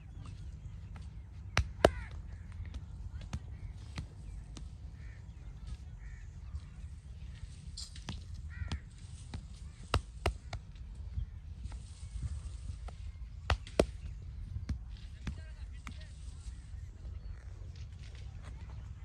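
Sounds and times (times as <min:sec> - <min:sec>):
crows cawing: 0:01.8 - 0:02.6, 0:04.8 - 0:06.8, 0:08.1 - 0:10.7.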